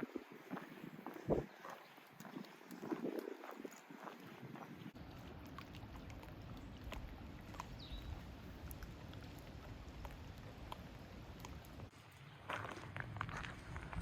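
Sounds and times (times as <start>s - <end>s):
footsteps on dirt trail: 0.0s - 5.0s, 12.4s - 14.0s
wind rumble on microphone: 0.0s - 5.0s, 13.0s - 14.0s.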